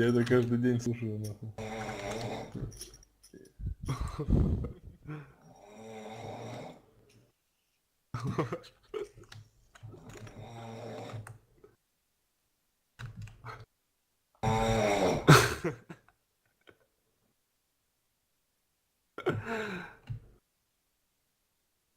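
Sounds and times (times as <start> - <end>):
person snoring: 1.5 - 2.7, 3.7 - 6.9, 10.0 - 11.3, 14.4 - 15.6.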